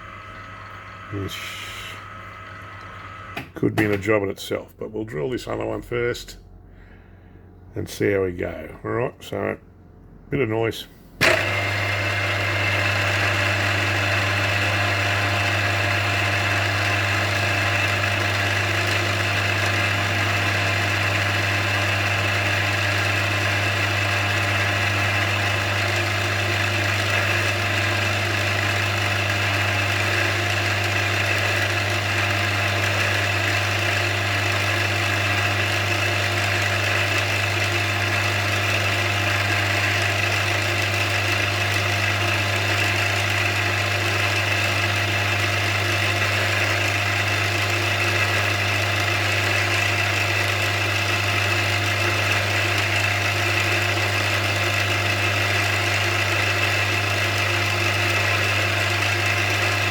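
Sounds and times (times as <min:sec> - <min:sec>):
milling machine humming and whining: 0:00.0 - 0:04.0, 0:11.2 - 0:59.9.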